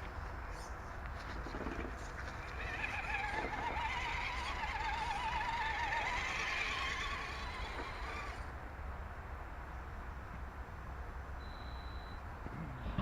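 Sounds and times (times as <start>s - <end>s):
electric motor whining: 2.4s - 8.5s.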